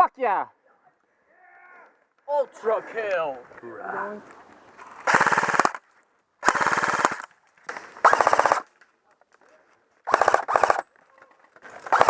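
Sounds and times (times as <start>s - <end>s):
airsoft gun firing bursts: 5.0s - 5.8s, 6.4s - 8.7s, 10.1s - 10.9s, 11.8s - 12.0s.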